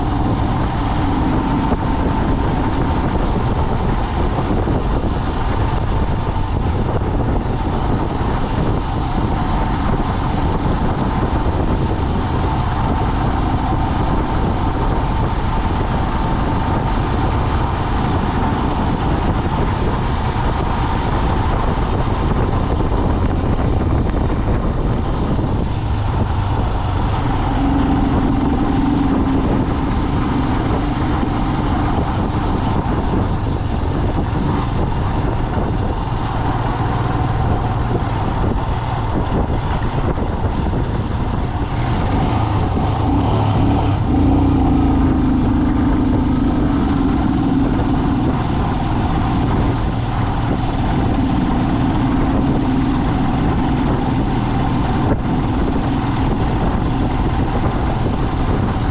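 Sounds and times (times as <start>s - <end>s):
car engine and road noise: 0.0s - 58.9s.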